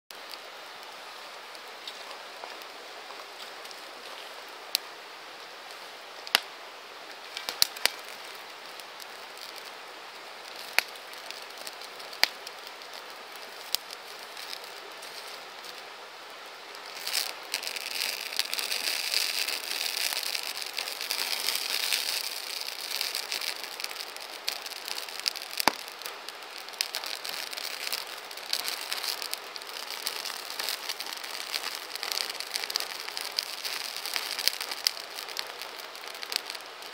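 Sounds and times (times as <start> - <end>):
campfire hissing: 0.1 - 36.9
wood cracking and popping: 7.4 - 9.7, 10.5 - 15.9, 16.8 - 36.9.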